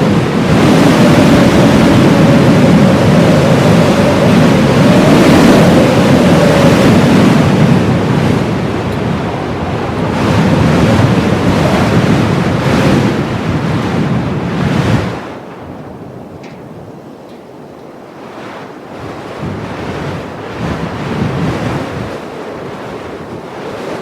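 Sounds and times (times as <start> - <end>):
blizzard wind gusting: 0.0 - 24.0
low wind whistle: 0.0 - 24.0.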